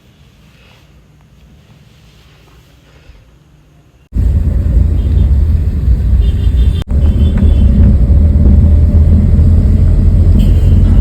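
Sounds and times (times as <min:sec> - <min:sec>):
loud low rumble: 0:04.1 - 0:11.0.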